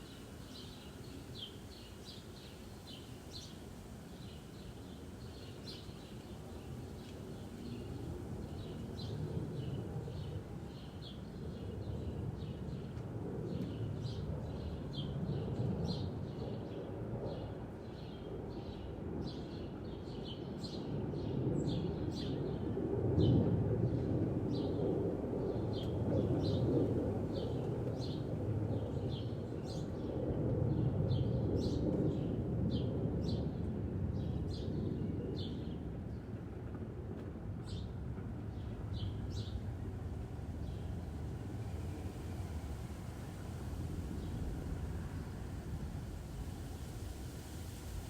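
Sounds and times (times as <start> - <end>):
wind rumble: 21.0 - 48.0
distant traffic: 36.7 - 48.0.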